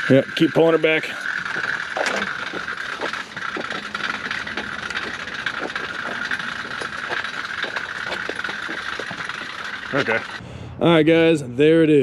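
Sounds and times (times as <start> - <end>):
steady high hum: 0.0 - 11.8
car wheels rolling with clicks: 0.1 - 10.4.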